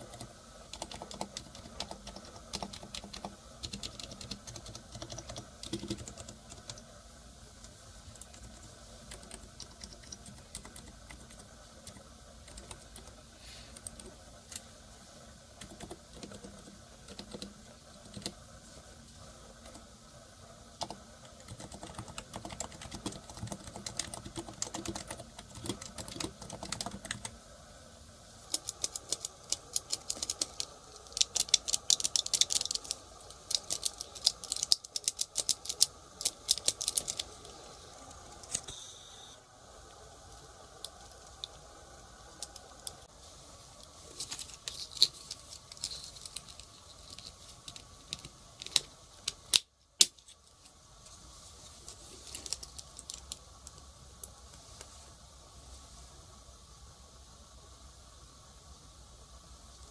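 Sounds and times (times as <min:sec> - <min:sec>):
keyboard typing: 0:00.0 - 0:06.9, 0:08.1 - 0:14.2, 0:15.6 - 0:18.4, 0:20.8 - 0:27.4, 0:28.5 - 0:37.5.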